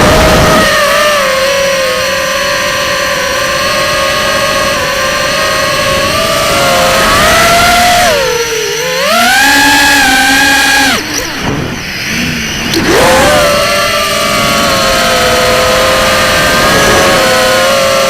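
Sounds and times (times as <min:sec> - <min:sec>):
drone motors whining: 0:00.0 - 0:18.0.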